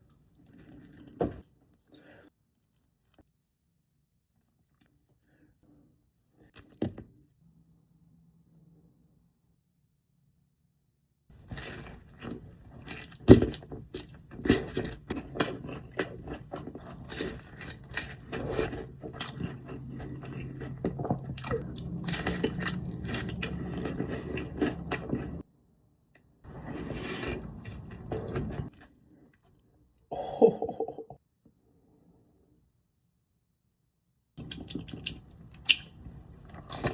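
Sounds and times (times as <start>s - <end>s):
crunchy bites and chewing: 11.4s - 25.4s, 34.4s - 36.9s.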